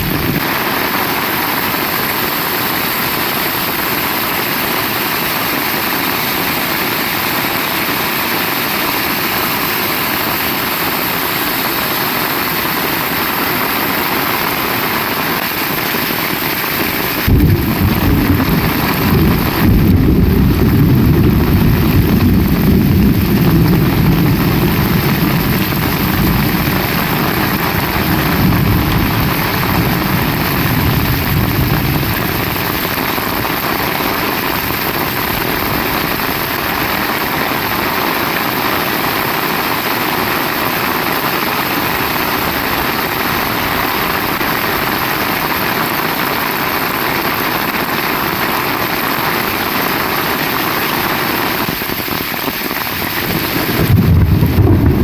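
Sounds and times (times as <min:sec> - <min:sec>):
heavy rain falling: 0:00.0 - 0:55.0
thunder crack and rumble: 0:17.1 - 0:38.9, 0:52.9 - 0:55.0.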